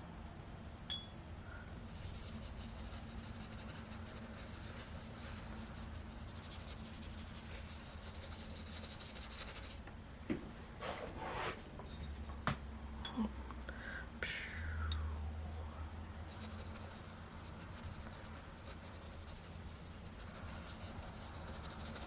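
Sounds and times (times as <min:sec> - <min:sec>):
brush scratching on paper: 0:01.9 - 0:09.8, 0:16.2 - 0:22.0.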